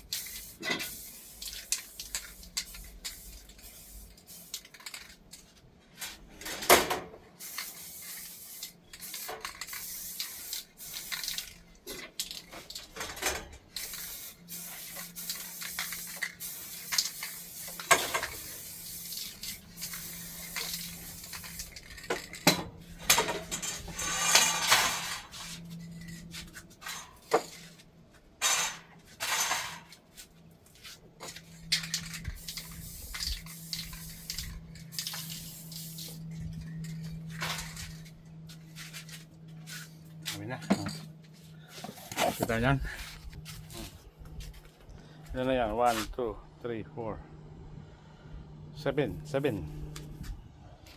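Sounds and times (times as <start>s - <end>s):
short hissing bursts: 0.0s - 4.9s, 7.4s - 11.5s, 13.8s - 22.0s, 32.0s - 36.3s
tools knocking and clacking: 21.3s - 25.3s
low steady hum: 30.4s - 50.9s.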